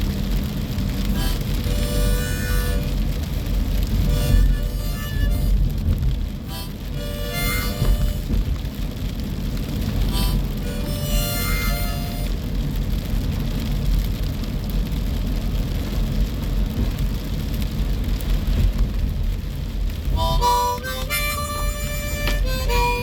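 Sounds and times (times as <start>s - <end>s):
storm wind buffeting microphone: 0.0s - 23.0s
short musical notes: 20.2s - 23.0s.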